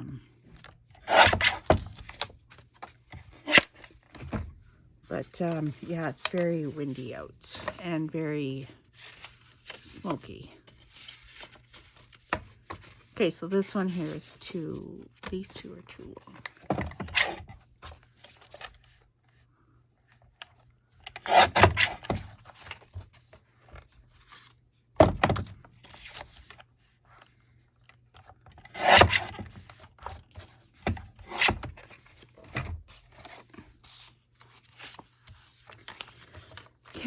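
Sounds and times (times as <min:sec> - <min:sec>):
paper scraping and rustling: 0:05.2 - 0:08.0, 0:08.8 - 0:14.4, 0:28.6 - 0:37.0.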